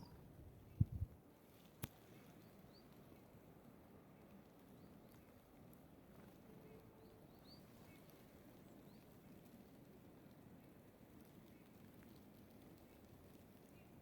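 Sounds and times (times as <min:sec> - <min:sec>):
faint high bird chirps: 0:00.0 - 0:01.1
faint low outdoor hum: 0:00.0 - 0:14.0.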